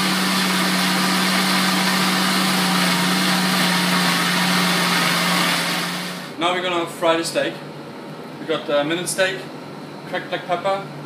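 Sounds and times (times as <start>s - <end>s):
blender motor running: 0.0s - 6.4s.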